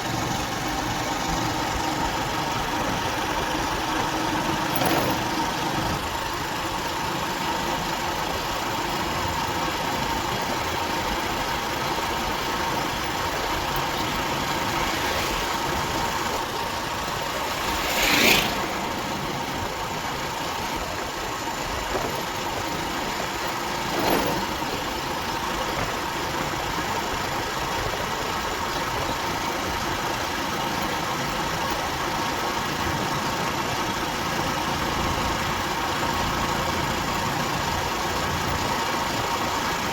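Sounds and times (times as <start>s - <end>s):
motorcycle engine running: 0.0s - 39.9s
road and wind noise: 0.0s - 39.9s
passing whoosh: 14.3s - 19.6s.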